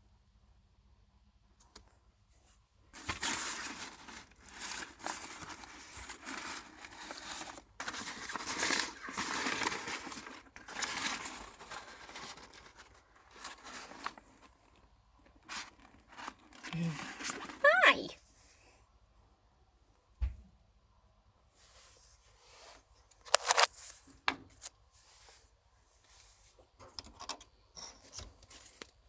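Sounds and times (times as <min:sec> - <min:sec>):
rustling and crinkling dry material: 0:02.2 - 0:18.7, 0:21.5 - 0:26.8, 0:27.8 - 0:29.0.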